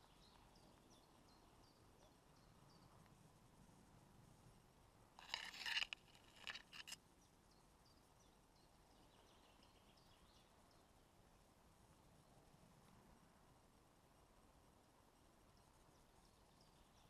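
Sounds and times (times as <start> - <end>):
rustling and crunching: 5.2 - 7.0.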